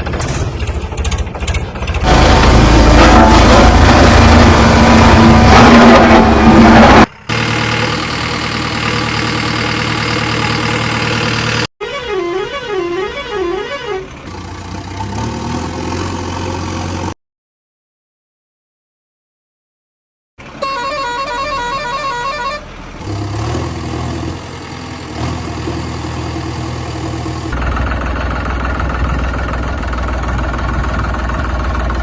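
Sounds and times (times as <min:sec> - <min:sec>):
heavy vehicle engines running: 0:00.0 - 0:17.2, 0:20.4 - 0:32.0
warbling horn: 0:11.8 - 0:14.1, 0:20.6 - 0:22.7.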